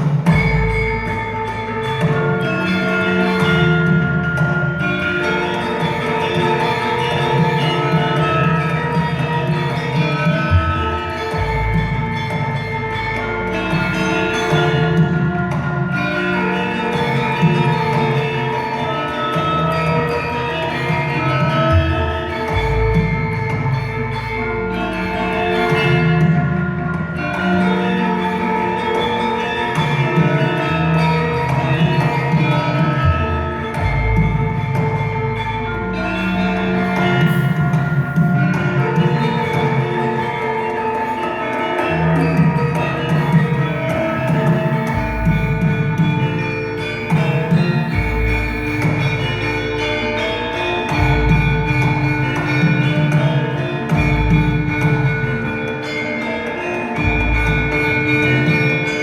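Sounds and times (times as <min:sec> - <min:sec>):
gamelan metal percussion: 0:00.0 - 0:59.0.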